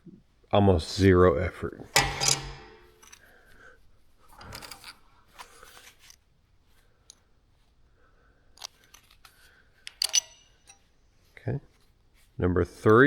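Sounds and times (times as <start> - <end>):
metal pieces clicking: 1.9 - 3.2, 4.4 - 4.9, 9.9 - 10.5.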